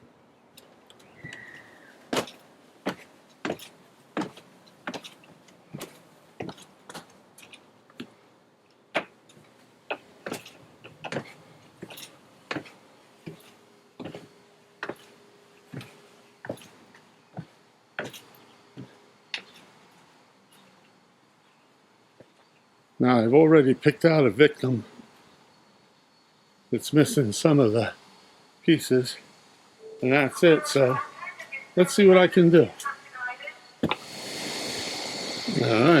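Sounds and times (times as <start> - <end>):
footsteps on hard surface: 2.1 - 8.2, 9.9 - 15.1.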